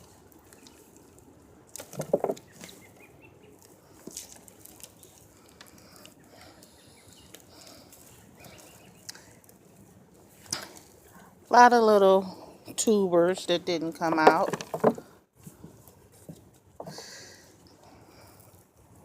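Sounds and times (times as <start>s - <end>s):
hands rustling through soil: 0.0s - 12.2s
soft knocks of tubers: 1.7s - 2.8s, 14.0s - 17.0s.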